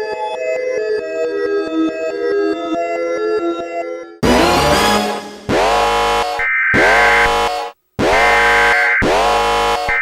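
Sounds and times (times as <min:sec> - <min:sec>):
electronic alert tones: 0:04.2 - 0:10.0.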